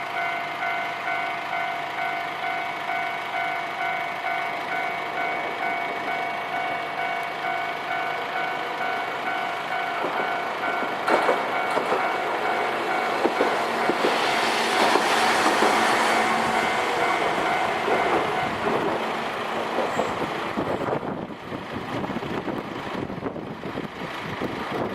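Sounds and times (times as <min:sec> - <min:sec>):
level crossing warning bell: 0:00.0 - 0:20.1
road noise: 0:00.0 - 0:24.9
tram wheels clacking over rail joints: 0:00.0 - 0:24.9.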